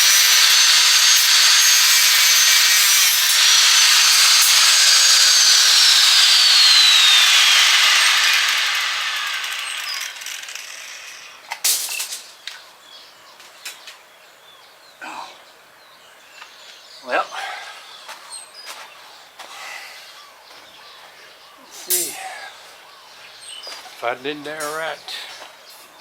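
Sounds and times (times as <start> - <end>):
angle grinder cutting steel: 0.0 - 11.4.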